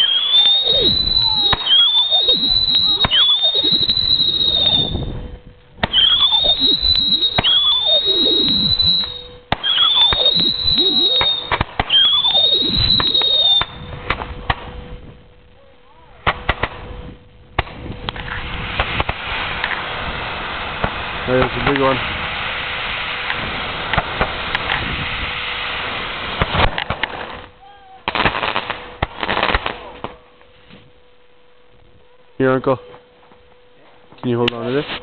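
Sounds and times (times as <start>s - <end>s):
firework pops and crackles: 0.0s - 4.6s, 5.8s - 14.8s, 16.2s - 16.8s, 17.5s - 30.2s
whistling fireworks: 0.0s - 15.3s, 16.0s - 31.8s.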